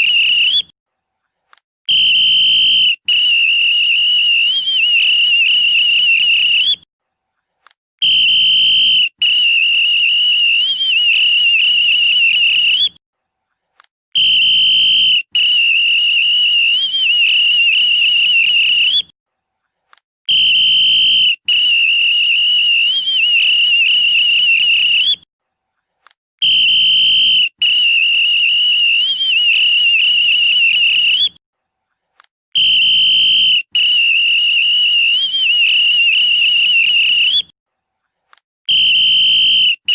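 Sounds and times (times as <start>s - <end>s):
police whistle blasts: 0.0s - 0.7s, 1.9s - 6.8s, 8.0s - 13.0s, 14.2s - 19.1s, 20.3s - 25.2s, 26.4s - 31.4s, 32.6s - 37.5s, 38.7s - 39.9s.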